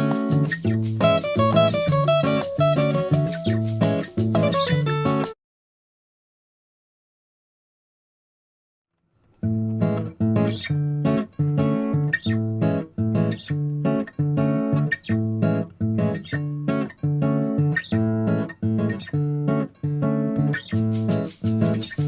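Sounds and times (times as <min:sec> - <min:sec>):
acoustic guitar picking: 0:00.0 - 0:05.3, 0:09.4 - 0:22.0.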